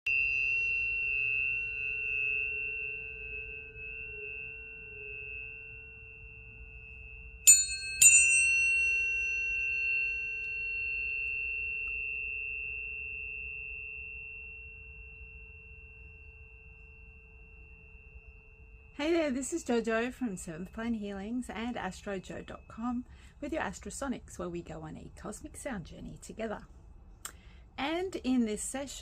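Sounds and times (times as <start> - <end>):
tuning fork struck metallic clang: 0.1 - 19.0
tuning forks ringing: 0.1 - 24.1.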